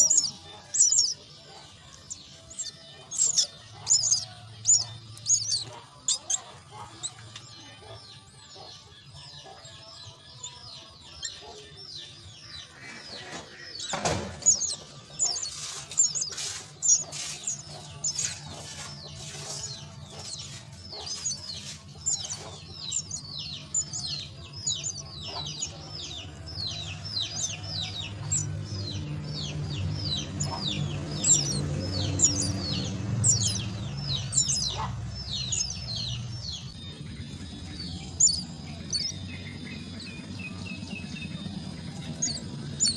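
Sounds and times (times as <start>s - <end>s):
chicks cheeping: 0.0s - 42.9s
steady low hum: 11.3s - 42.9s
thump: 13.3s - 14.6s.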